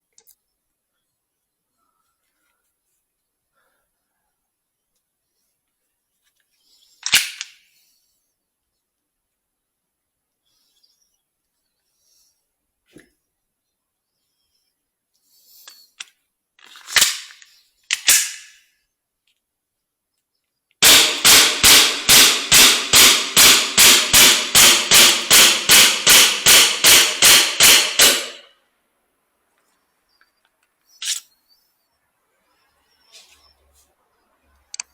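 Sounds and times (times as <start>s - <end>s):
airsoft pistol shots: 20.8s - 28.4s.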